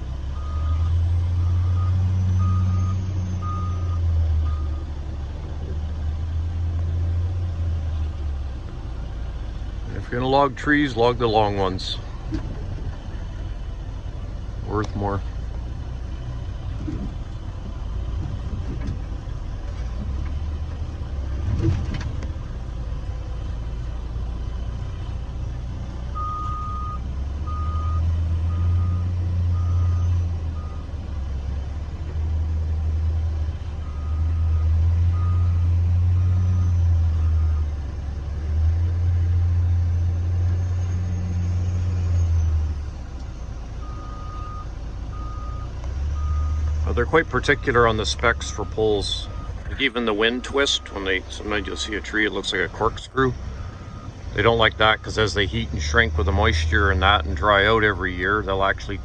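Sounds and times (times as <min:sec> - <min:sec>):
heavy diesel engine under load: 0:00.0 - 0:59.0
reversing alarm beeping: 0:00.4 - 0:04.9, 0:26.2 - 0:30.9, 0:33.8 - 0:37.7, 0:43.8 - 0:52.4.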